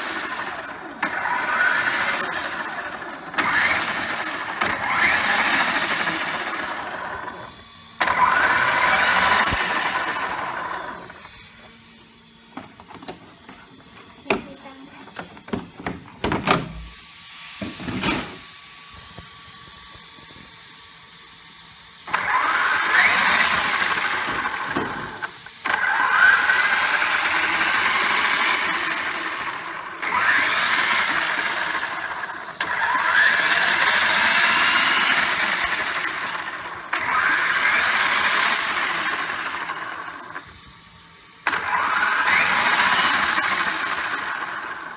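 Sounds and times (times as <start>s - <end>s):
rc truck drivetrain whining: 0.0s - 7.4s, 22.8s - 40.4s, 41.6s - 44.9s.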